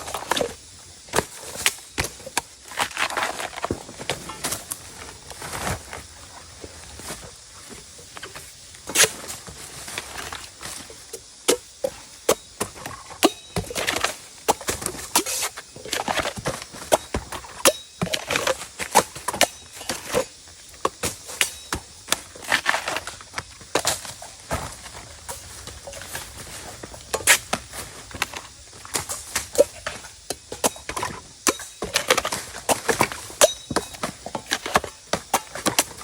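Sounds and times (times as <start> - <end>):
blade chopping bamboo: 11.5 - 23.1, 27.1 - 36.0.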